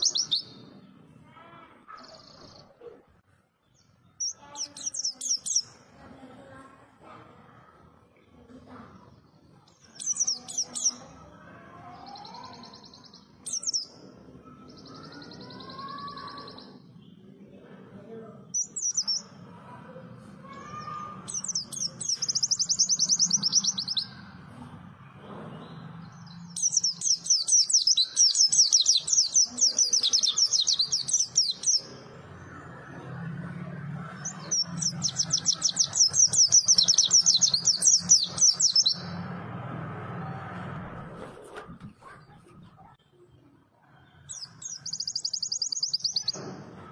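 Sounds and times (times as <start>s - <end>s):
bird chirping and trilling: 0.0s - 0.8s, 3.6s - 5.9s, 9.6s - 17.2s, 18.4s - 19.4s, 20.4s - 24.3s, 25.6s - 39.2s, 44.2s - 46.5s.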